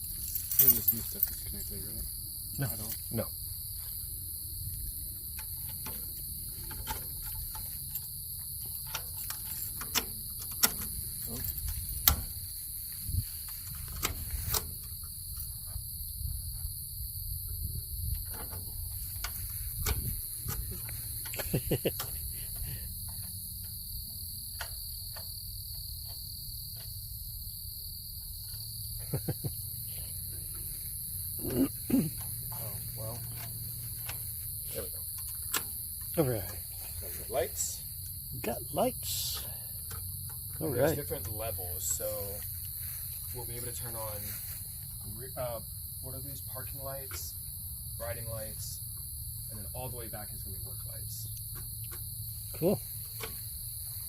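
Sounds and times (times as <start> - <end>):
crickets chirping: 0.0 - 54.0.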